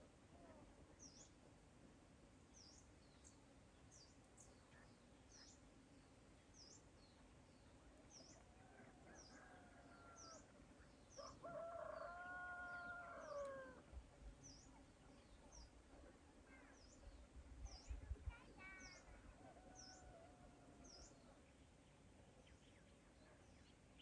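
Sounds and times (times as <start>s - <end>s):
rooster crowing: 11.2s - 13.8s.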